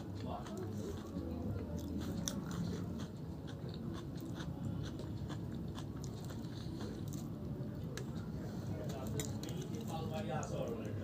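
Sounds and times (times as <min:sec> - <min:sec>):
person chewing food: 0:00.0 - 0:08.3.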